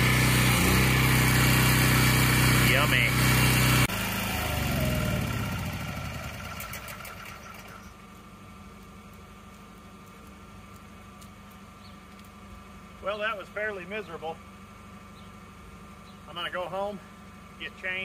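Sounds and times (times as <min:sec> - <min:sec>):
pressure washer motor winding down: 0:00.0 - 0:08.0.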